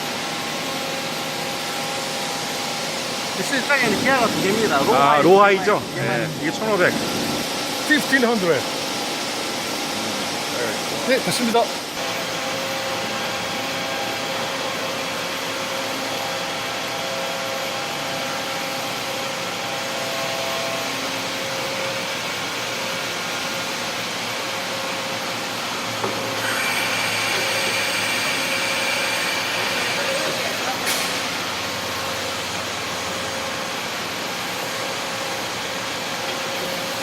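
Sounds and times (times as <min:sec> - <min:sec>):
boring machine whining: 0:01.0 - 0:18.0, 0:25.5 - 0:33.8.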